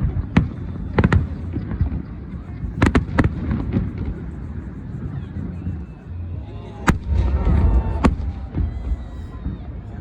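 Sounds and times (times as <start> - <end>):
fireworks bangs: 0.0 - 4.2, 6.8 - 9.8
low rumble of distant fireworks: 0.0 - 10.0.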